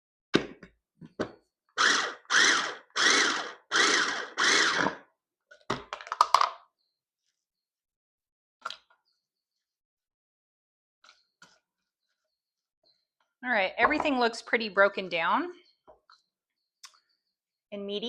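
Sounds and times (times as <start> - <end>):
food processor chopping: 1.8 - 5.1.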